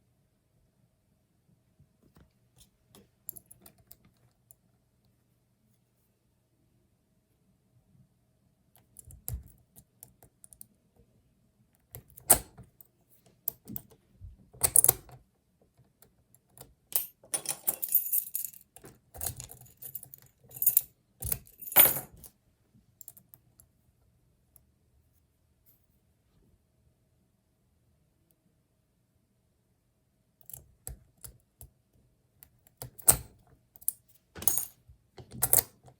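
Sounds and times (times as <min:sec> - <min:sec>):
lock picks clicking in padlock: 0:12.0 - 0:12.6, 0:14.6 - 0:15.1, 0:32.7 - 0:34.7, 0:35.3 - 0:35.9.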